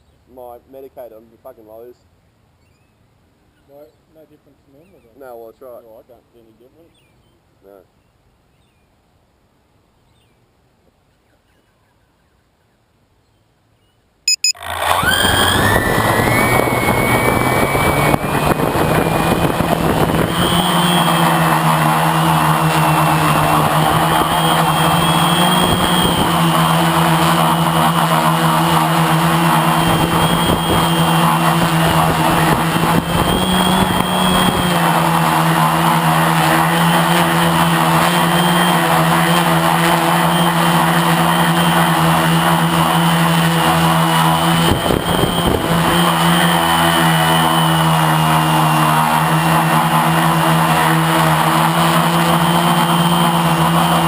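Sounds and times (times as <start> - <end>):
quadcopter motors whining: 14.3 - 54.0.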